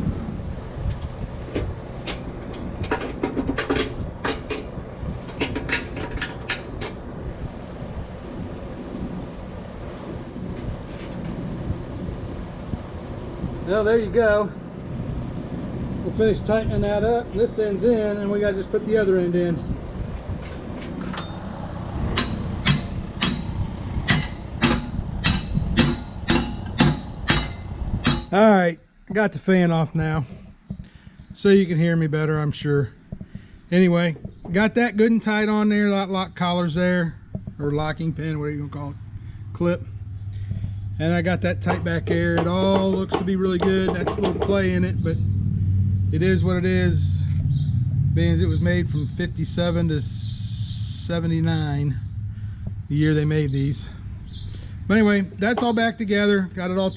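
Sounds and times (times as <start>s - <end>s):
fan humming: 0.0s - 56.9s
hammer striking metal: 22.1s - 28.4s, 41.6s - 44.6s.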